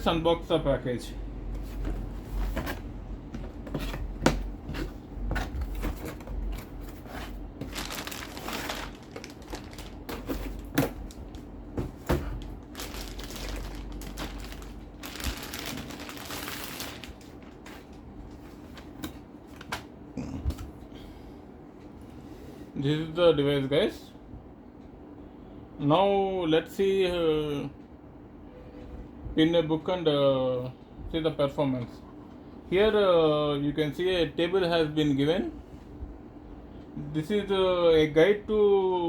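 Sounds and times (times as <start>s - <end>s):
box knocks and clicks: 3.4s - 4.5s
packaging crinkling and rustling: 5.3s - 19.8s.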